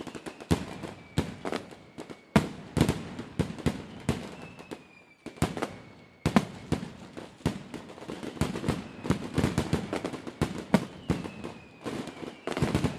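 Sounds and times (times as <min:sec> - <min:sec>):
falling firework whistle: 0:00.0 - 0:12.9
firework bangs: 0:00.0 - 0:12.9
firework crackling: 0:00.0 - 0:12.9.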